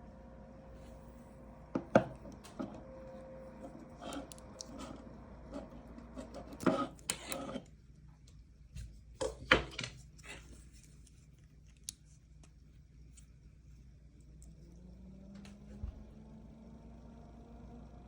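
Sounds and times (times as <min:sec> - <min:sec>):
faint fan hum: 0:00.0 - 0:18.0
fan scraping and rubbing clicks: 0:03.5 - 0:07.7.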